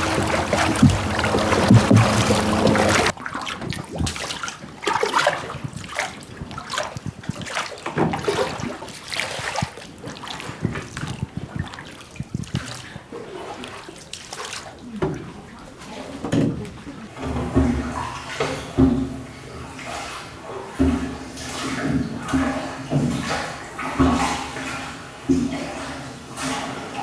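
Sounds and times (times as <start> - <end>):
loud steady humming: 0.0 - 3.1
water trickling and splashing: 0.0 - 27.0.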